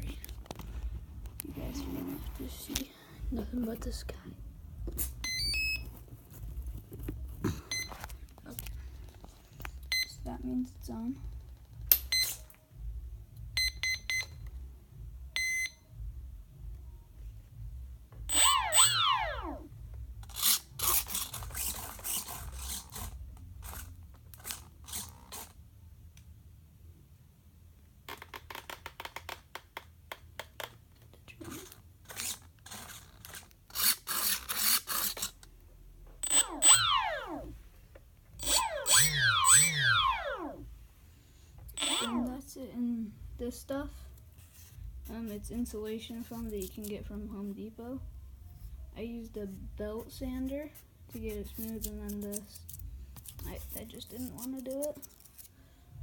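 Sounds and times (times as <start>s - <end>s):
electric motor whine spinning down: 18.3s - 19.7s, 36.2s - 37.6s, 38.4s - 40.7s
electronic speed controller beeping: 18.3s - 19.7s, 36.2s - 37.5s, 38.4s - 40.6s, 41.8s - 42.3s
servos buzzing and clicking: 38.4s - 40.6s, 41.8s - 42.3s.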